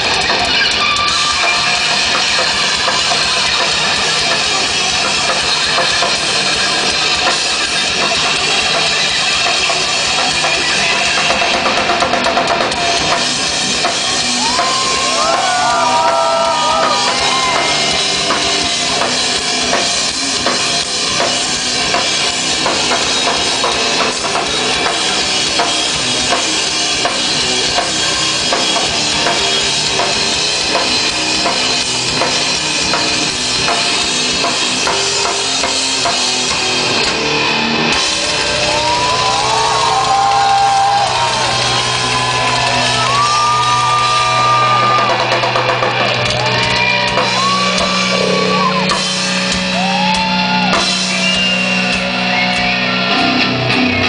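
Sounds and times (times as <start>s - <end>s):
busy drum kit: 0.0s - 54.0s
sustained bass notes: 10.6s - 54.0s
guitar solo with bent notes: 13.9s - 23.0s, 33.4s - 54.0s.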